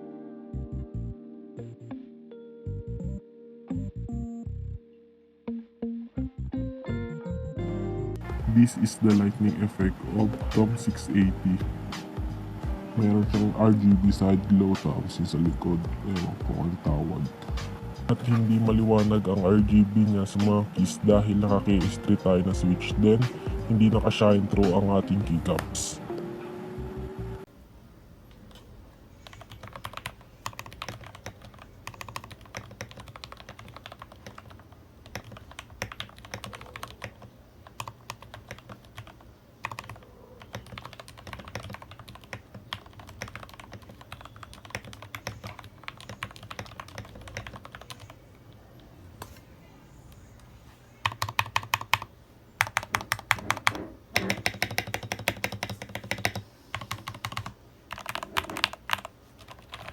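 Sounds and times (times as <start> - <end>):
typing on mechanical keyboard: 29.2 - 48.2, 51.0 - 59.9.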